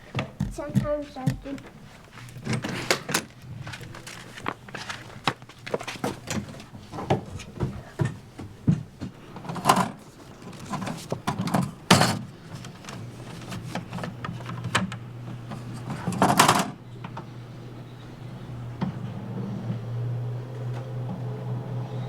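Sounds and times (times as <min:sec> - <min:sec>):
steady low hum: 0:07.4 - 0:22.0.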